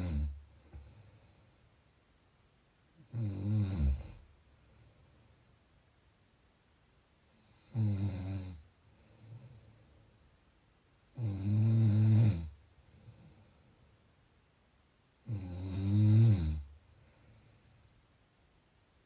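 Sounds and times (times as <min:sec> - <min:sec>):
person snoring: 0:00.0 - 0:00.4, 0:03.0 - 0:04.2, 0:07.6 - 0:08.6, 0:11.2 - 0:12.6, 0:15.2 - 0:16.7
faint breathing: 0:00.0 - 0:01.8, 0:08.8 - 0:10.3, 0:12.7 - 0:14.1, 0:16.8 - 0:18.0.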